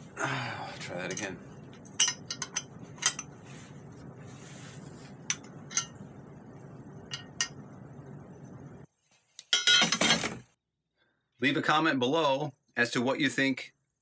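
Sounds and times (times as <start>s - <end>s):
steady background hiss: 0.0s - 9.7s
hand tools clinking on metal: 1.0s - 3.4s.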